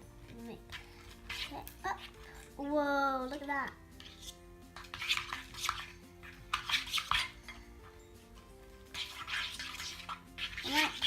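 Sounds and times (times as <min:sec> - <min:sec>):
background music: 0:00.0 - 0:11.0
utensil scraping a bowl: 0:00.7 - 0:02.5, 0:04.0 - 0:08.1, 0:08.8 - 0:11.0.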